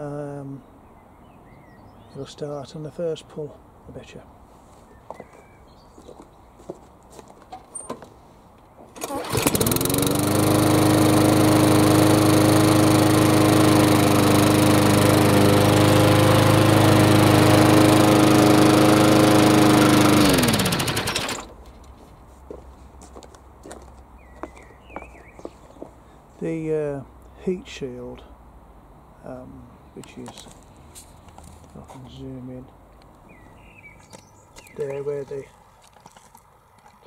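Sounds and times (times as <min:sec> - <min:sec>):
lawn mower engine running: 0:08.9 - 0:21.8.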